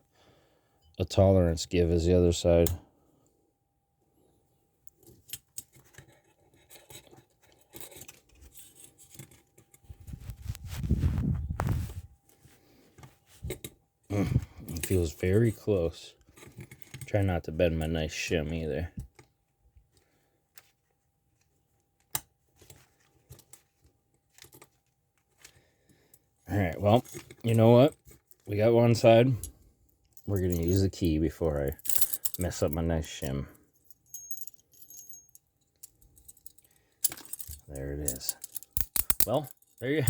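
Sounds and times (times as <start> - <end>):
small metal clicks and scrapes: 4.9 - 10.6, 33.8 - 40.0
small metallic clicks in a lock: 37.4 - 39.8.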